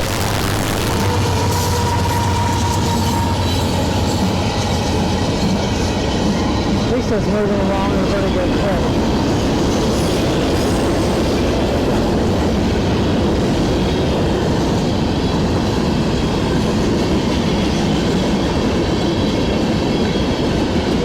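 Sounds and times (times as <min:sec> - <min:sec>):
freight train passing: 0:00.0 - 0:21.0.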